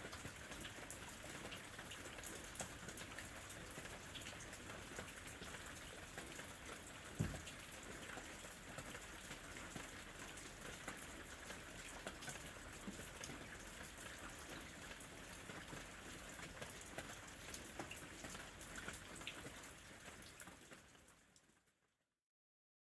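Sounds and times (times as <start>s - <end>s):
light rain pattering: 0.0s - 21.9s
low thump: 7.2s - 7.6s.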